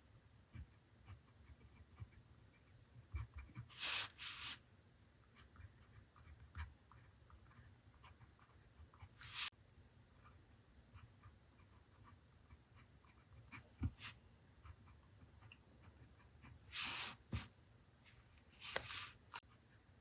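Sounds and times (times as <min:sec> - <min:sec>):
pen writing on paper: 0:00.5 - 0:04.6.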